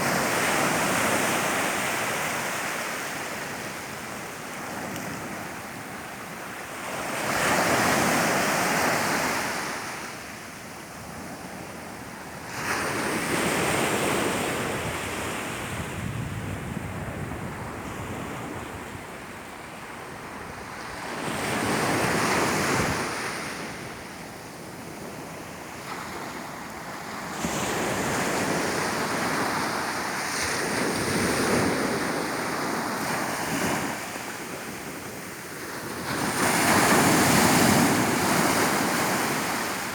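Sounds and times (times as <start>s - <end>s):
sea waves breaking on beach: 25.0s - 39.9s.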